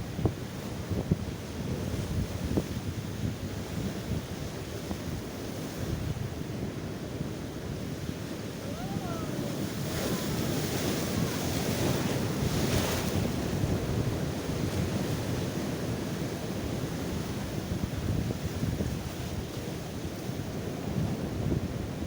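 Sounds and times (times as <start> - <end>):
wind buffeting microphone: 0.0 - 22.0
surf breaking on shore: 7.6 - 17.6.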